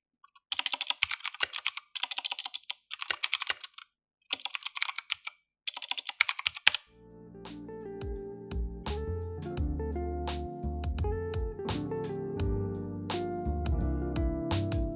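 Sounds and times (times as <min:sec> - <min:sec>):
clicky mechanical keyboard typing: 0:00.3 - 0:06.8
background guitar music: 0:07.0 - 0:14.9.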